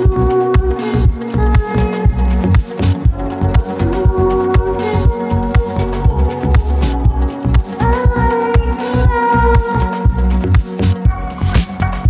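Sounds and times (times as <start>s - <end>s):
sustained synth tones: 0.0s - 11.3s
kick drum beat: 9.1s - 11.7s.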